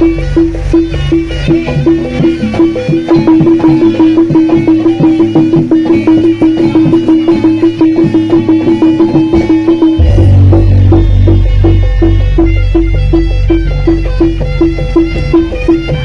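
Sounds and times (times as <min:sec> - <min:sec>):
drum strokes: 0:00.0 - 0:16.0
ensemble music: 0:10.0 - 0:13.4
repeated pitched percussion note: 0:10.0 - 0:14.2.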